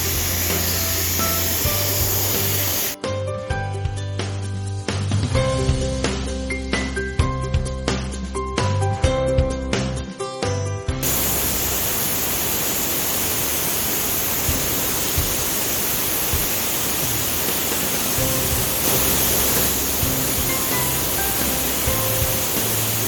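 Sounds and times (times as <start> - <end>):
dry ice blasting nozzle hissing: 0.0 - 3.0, 11.0 - 23.0.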